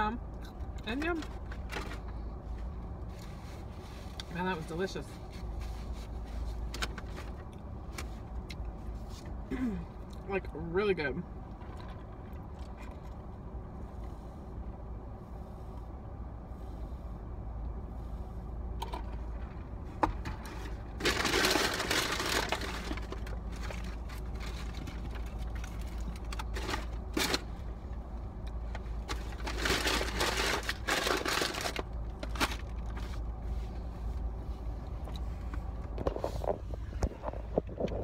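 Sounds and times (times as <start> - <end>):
steady low hum: 0.0 - 38.0
paper wrapper crinkling: 21.0 - 25.3, 29.1 - 32.9.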